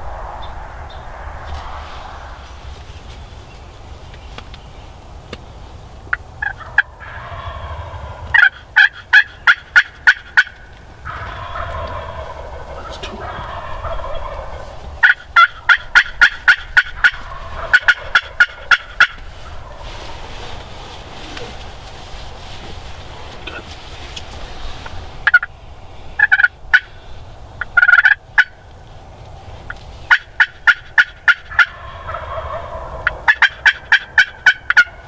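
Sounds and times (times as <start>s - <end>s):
turkey warbling call: 6.4s - 19.9s, 25.2s - 25.5s, 26.2s - 27.0s, 27.6s - 28.6s, 30.1s - 35.0s
turkey yelping: 6.4s - 19.9s, 25.2s - 25.5s, 26.2s - 27.0s, 27.6s - 28.6s, 30.1s - 35.0s.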